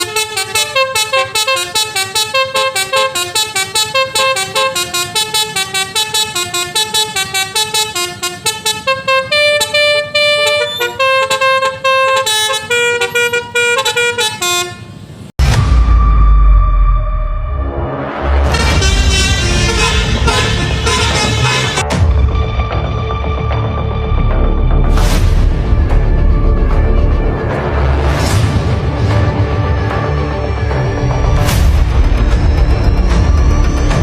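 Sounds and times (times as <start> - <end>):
musical horn trumpets playing melody: 0.0 - 15.0, 18.4 - 22.0.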